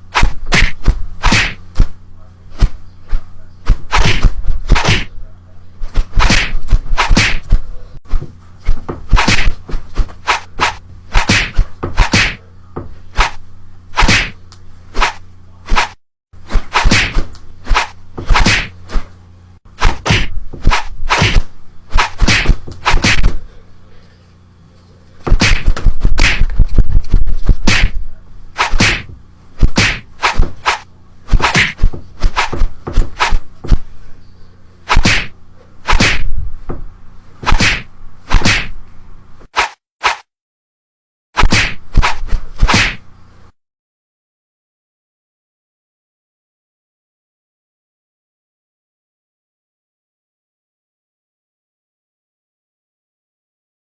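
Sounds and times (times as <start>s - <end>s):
sharp cracks: 0.1s - 1.9s, 6.2s - 7.6s, 9.1s - 9.6s, 10.2s - 12.4s, 19.8s - 23.3s, 25.3s - 26.6s, 27.6s - 28.0s, 28.6s - 32.6s, 34.9s - 36.3s, 37.4s - 38.8s, 41.4s - 43.0s
sharp whacking hits: 0.1s - 2.0s, 3.7s - 5.2s, 5.9s - 7.6s, 8.7s - 12.4s, 13.1s - 13.4s, 14.0s - 14.4s, 15.0s - 19.1s, 19.8s - 23.4s, 25.3s - 26.6s, 27.2s - 28.0s, 28.6s - 33.8s, 34.9s - 36.3s, 37.4s - 38.8s, 39.6s - 40.3s, 41.4s - 43.0s.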